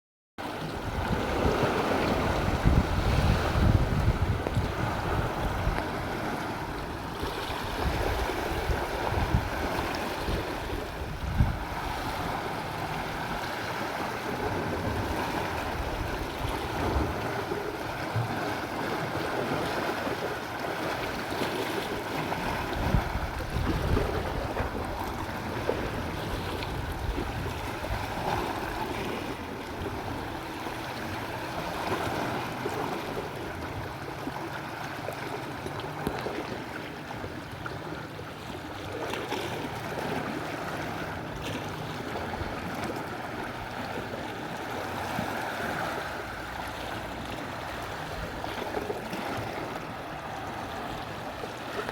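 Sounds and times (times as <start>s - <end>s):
waves washing against shore: 0.4s - 51.9s
wind buffeting microphone: 0.6s - 34.6s.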